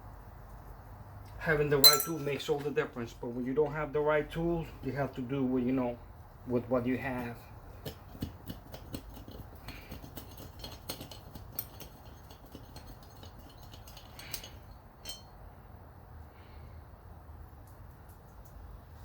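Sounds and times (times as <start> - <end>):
low background hum: 0.0 - 19.0
small metal parts clinking: 1.8 - 2.3, 8.8 - 15.3.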